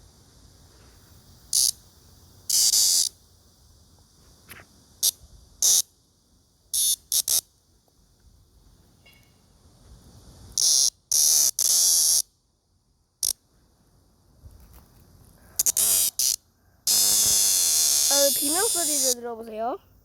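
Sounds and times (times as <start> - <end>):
cicada distress buzzes: 0.0 - 6.0, 6.6 - 7.6, 9.4 - 12.4, 15.4 - 20.0.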